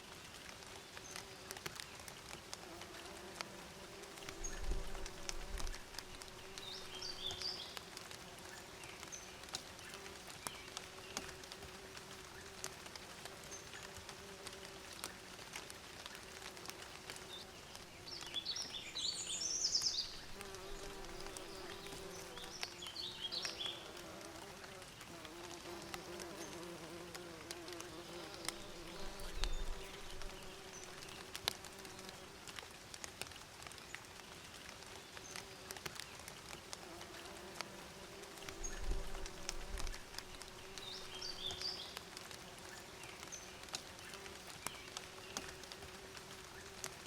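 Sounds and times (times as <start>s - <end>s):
bees buzzing: 19.4s - 32.2s.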